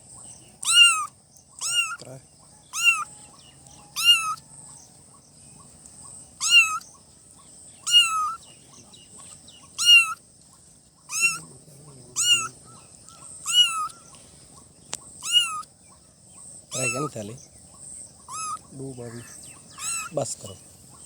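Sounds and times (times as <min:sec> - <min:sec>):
kitten meowing: 0:00.6 - 0:02.0, 0:02.7 - 0:03.1, 0:03.9 - 0:04.4, 0:06.4 - 0:06.8, 0:07.8 - 0:08.4, 0:09.8 - 0:10.2, 0:11.1 - 0:11.5, 0:12.2 - 0:12.6, 0:13.4 - 0:14.0, 0:15.2 - 0:15.7, 0:16.7 - 0:17.2, 0:18.3 - 0:18.7, 0:19.8 - 0:20.2.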